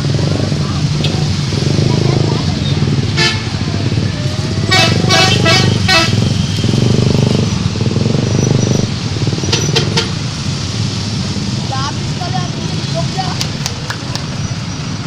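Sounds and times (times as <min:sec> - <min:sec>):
bus engine rumble: 0:00.0 - 0:15.0
bus horn playing tuned toots: 0:03.2 - 0:03.6, 0:04.7 - 0:06.2.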